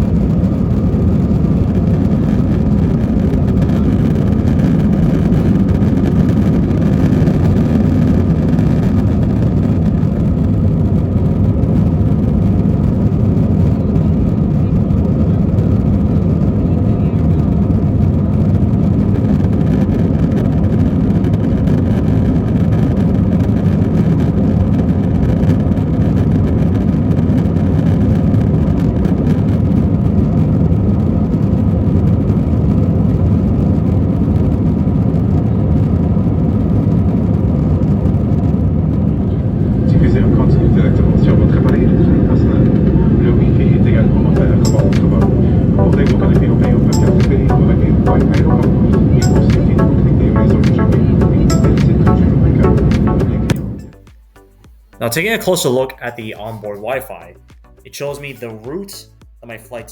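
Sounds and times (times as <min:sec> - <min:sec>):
jet engine and airflow rush: 0:00.0 - 0:54.1
faint steady hum: 0:38.8 - 0:54.1.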